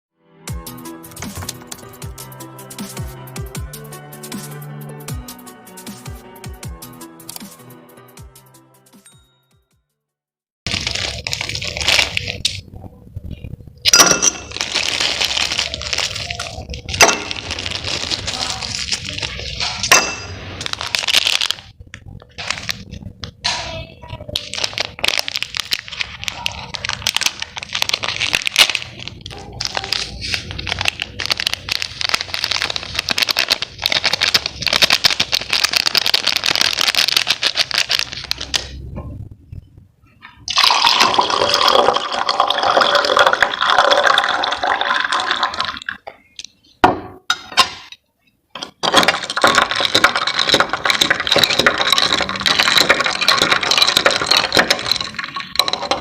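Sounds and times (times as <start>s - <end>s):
slurping and gulping a drink: 40.5s - 46.0s, 49.1s - 56.0s.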